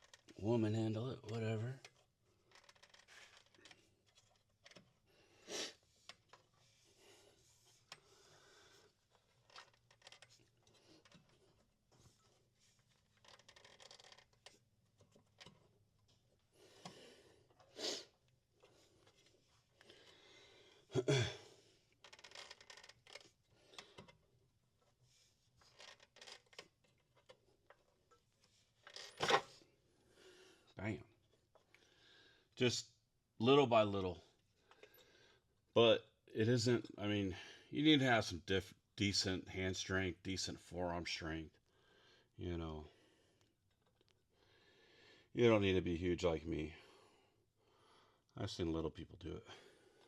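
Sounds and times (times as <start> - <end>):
rubber belt rubbing and scraping: 1.3 - 20.8, 21.8 - 29.8.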